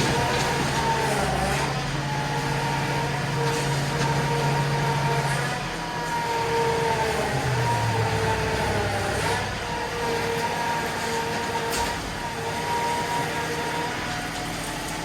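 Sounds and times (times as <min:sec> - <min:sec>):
tractor diesel engine running: 0:00.0 - 0:10.8.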